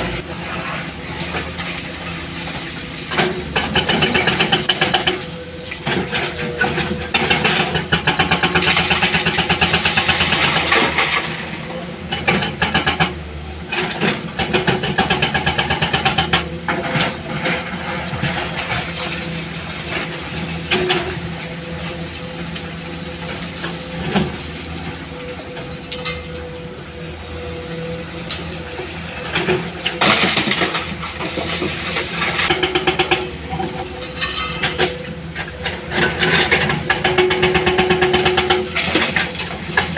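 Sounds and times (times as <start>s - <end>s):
diesel engines running: 0.0s - 39.9s.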